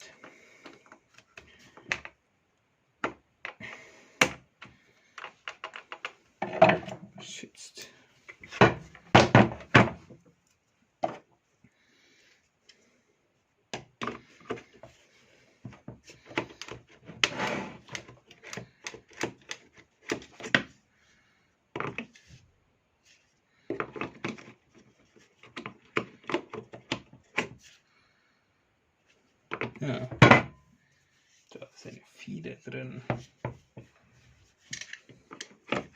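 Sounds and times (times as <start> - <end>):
chainsaw parts clicking and rattling: 5.1 - 7.0, 34.6 - 35.9.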